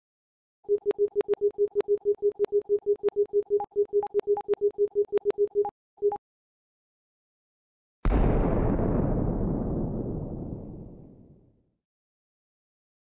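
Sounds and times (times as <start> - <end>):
rapid electronic beeping: 0.7 - 6.2.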